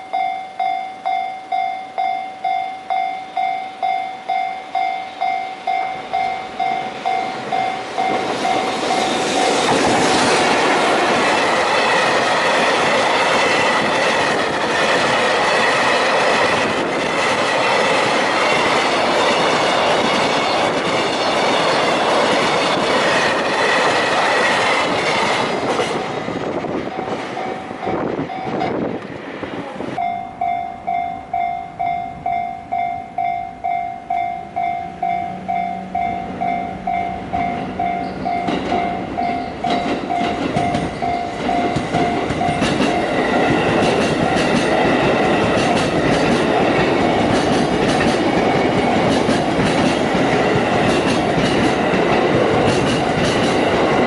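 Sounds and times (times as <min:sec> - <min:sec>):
level crossing warning bell: 0:00.0 - 0:09.7, 0:26.8 - 0:28.8, 0:30.0 - 0:46.9
train wheels rushing on rail: 0:01.9 - 0:32.8, 0:33.6 - 0:54.0.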